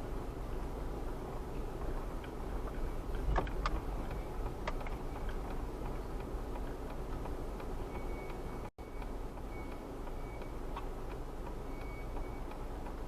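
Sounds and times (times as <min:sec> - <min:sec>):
car interior road rumble: 0:00.0 - 0:13.0
sharp clicks: 0:03.1 - 0:07.7.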